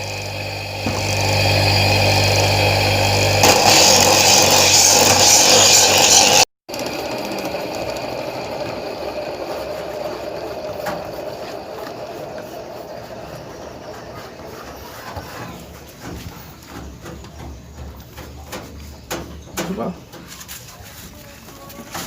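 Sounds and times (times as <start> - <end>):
coconut grating rasp: 0.0 - 16.7
grating machine motor hum: 0.0 - 20.0.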